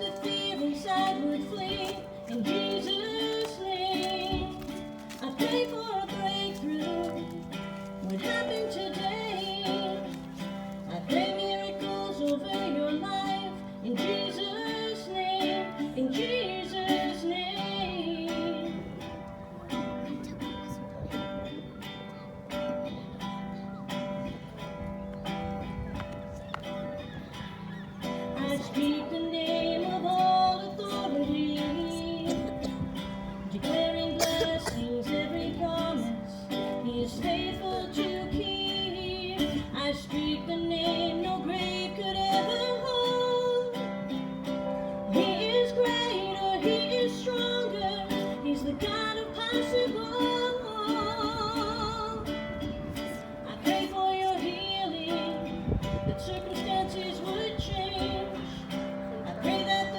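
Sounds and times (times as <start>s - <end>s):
acoustic guitar: 0.0s - 59.9s.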